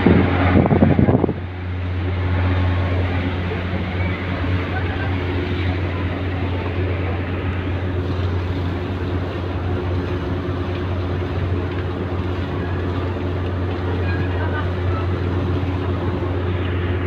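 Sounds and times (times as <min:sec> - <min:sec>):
constant wash of noise: 0:00.0 - 0:17.0
ferry engines droning: 0:00.0 - 0:17.0.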